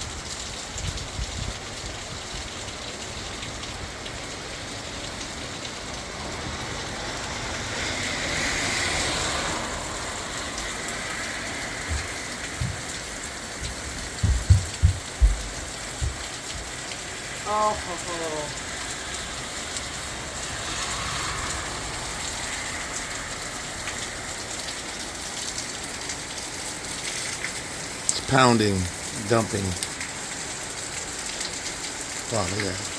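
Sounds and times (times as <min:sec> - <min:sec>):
heavy rain pouring: 0:00.0 - 0:32.9
short low thumps: 0:11.9 - 0:16.7.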